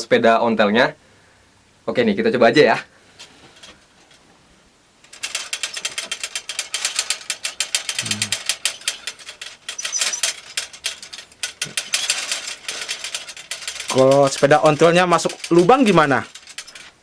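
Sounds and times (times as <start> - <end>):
bicycle ratcheting clicks: 5.3 - 16.7.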